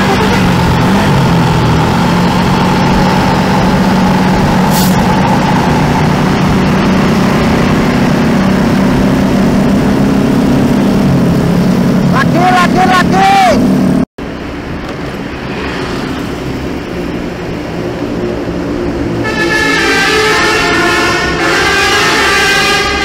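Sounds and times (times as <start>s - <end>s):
vehicle engine running: 0.0s - 15.5s
road noise: 0.0s - 23.0s.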